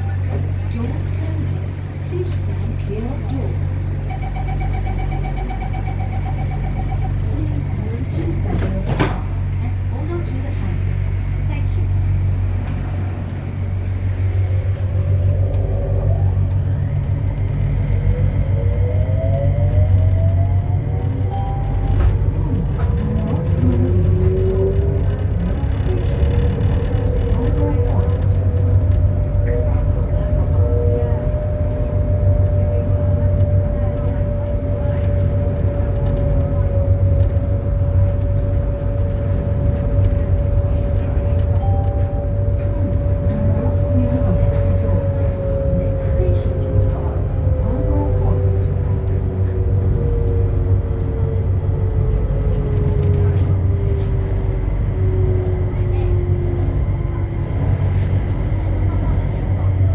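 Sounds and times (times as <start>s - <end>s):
constant whine: 0.0s - 59.9s
light rail car rumbling: 0.0s - 59.9s
rubber tyres rumbling: 14.3s - 33.6s.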